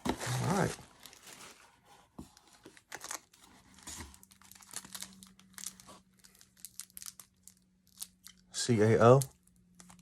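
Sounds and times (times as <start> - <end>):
packaging crinkling: 2.4 - 8.4.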